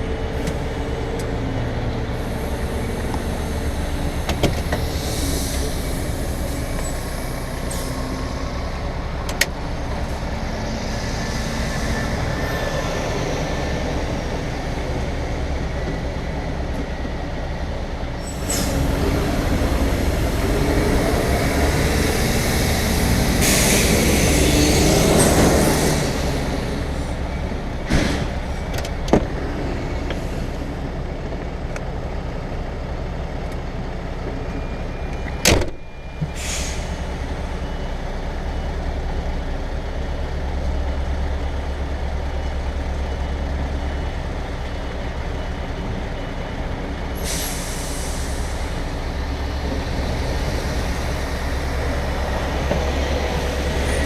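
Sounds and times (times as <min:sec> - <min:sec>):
diesel engine droning: 0:00.0 - 0:54.0
air hissing: 0:47.2 - 0:48.9.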